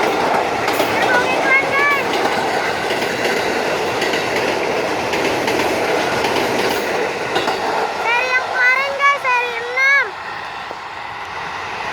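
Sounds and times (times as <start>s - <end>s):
train rumbling past: 0.0s - 11.9s
wheels clicking on rails: 0.0s - 11.9s.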